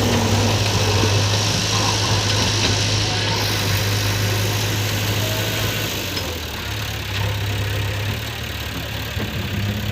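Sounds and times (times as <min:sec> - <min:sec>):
diesel engine idling: 0:00.0 - 0:09.9.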